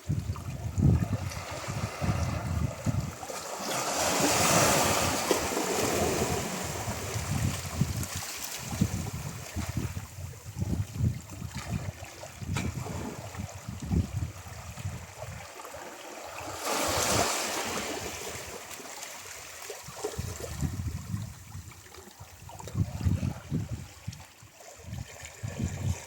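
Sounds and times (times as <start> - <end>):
wind buffeting microphone: 0.1 - 3.3, 4.2 - 15.4, 19.9 - 26.0
ocean waves breaking on shore: 1.0 - 9.4, 15.5 - 20.1.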